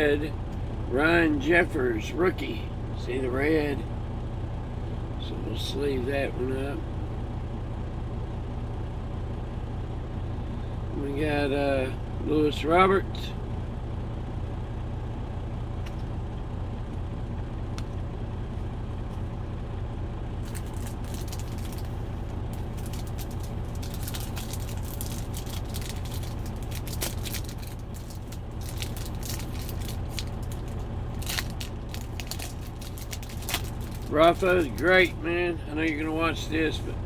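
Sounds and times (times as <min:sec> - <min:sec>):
truck engine idling: 0:00.0 - 0:37.0
trading cards rustling: 0:20.4 - 0:36.8.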